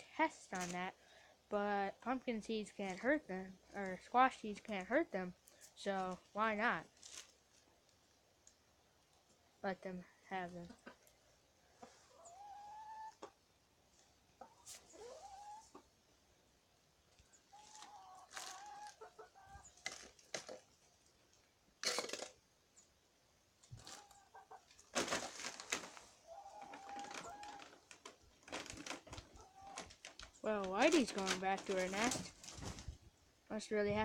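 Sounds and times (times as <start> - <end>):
hens clucking softly: 10.7 - 16.0, 17.2 - 20.1.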